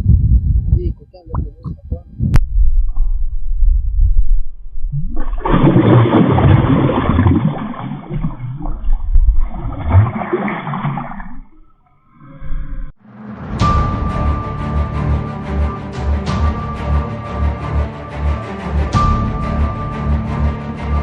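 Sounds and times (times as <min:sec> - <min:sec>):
water rushing and gurgling: 0:04.8 - 0:13.0.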